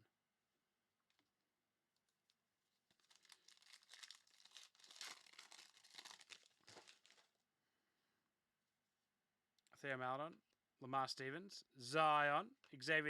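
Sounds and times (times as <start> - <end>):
card pack wrapper tearing and crinkling: 2.9 - 7.3.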